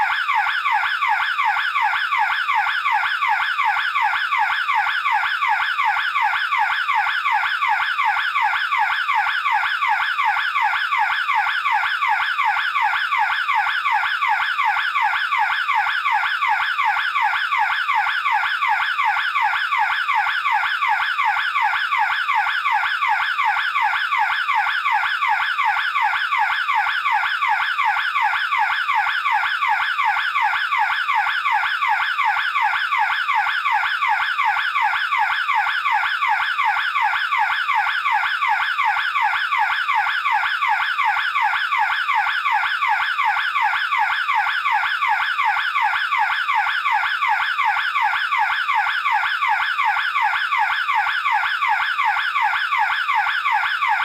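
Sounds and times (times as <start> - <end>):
burglar alarm siren: 0.0 - 54.0.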